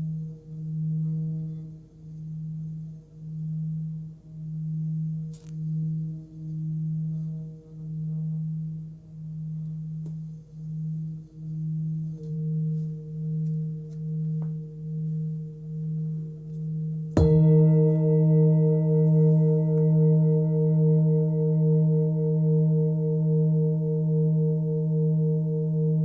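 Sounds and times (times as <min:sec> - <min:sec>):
singing bowl low pulsing tone: 0:00.0 - 0:26.0
singing bowl struck and ringing: 0:11.6 - 0:26.0.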